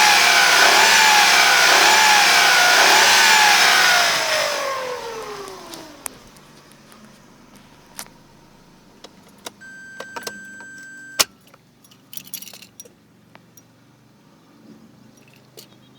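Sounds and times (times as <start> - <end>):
low steady hum: 4.6 - 11.5
car keys jangling: 6.2 - 13.7
electronic warning beep: 9.6 - 11.3.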